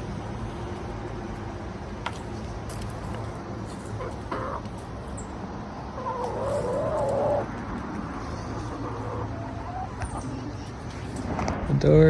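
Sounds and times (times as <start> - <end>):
chicken squawking: 4.0 - 4.7, 6.0 - 7.5, 8.5 - 10.2.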